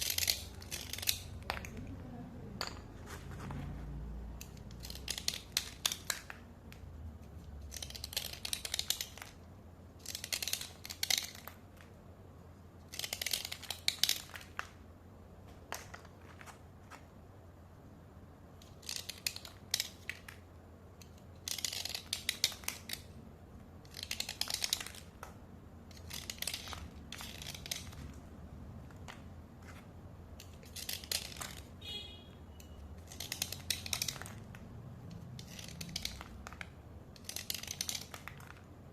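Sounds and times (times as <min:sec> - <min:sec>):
slate pencils scraping: 0:00.0 - 0:02.2, 0:07.3 - 0:09.4, 0:25.9 - 0:28.2, 0:29.0 - 0:31.7, 0:32.6 - 0:38.7.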